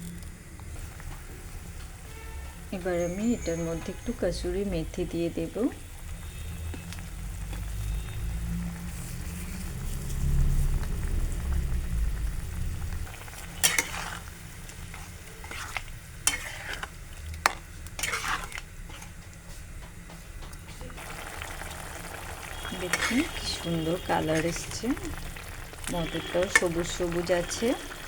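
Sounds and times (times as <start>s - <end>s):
curry simmering in a pan: 0.1s - 19.6s, 20.4s - 28.0s
spatula scraping a pan: 13.3s - 19.3s, 22.5s - 25.4s.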